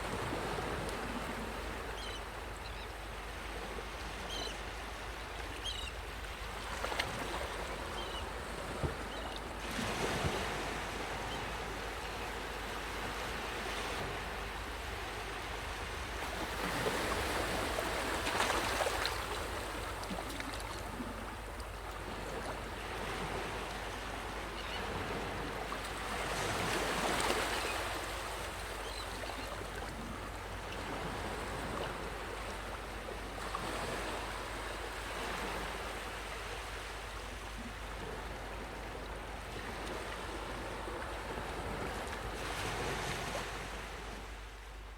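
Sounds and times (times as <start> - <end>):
ocean waves breaking on beach: 0.0 - 44.9.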